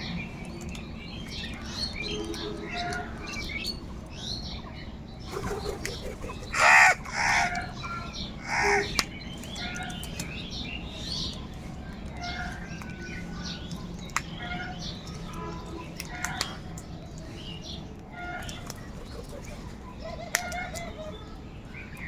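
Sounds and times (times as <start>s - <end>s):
small birds chirping: 0.0s - 22.0s
crows cawing: 6.5s - 9.0s.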